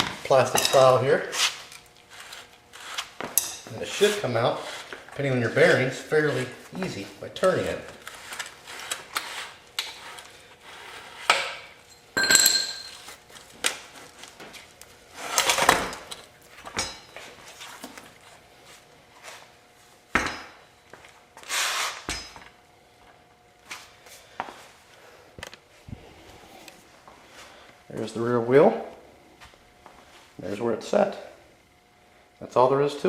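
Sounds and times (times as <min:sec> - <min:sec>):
metal knocks and clinks: 0:12.1 - 0:13.0
ringing metal clink: 0:12.2 - 0:13.0.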